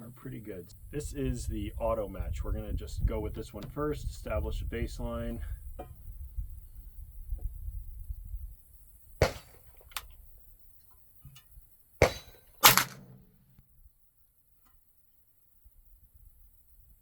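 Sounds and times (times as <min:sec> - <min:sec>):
rifle shots cracking: 0:09.2 - 0:10.0, 0:12.0 - 0:13.6
rifle metallic clacks: 0:11.3 - 0:13.6.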